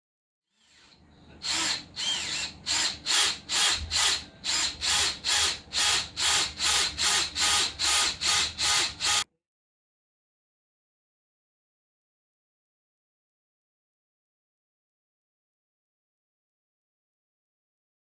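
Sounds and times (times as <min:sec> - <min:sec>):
power drill bursts: 0:00.6 - 0:09.3.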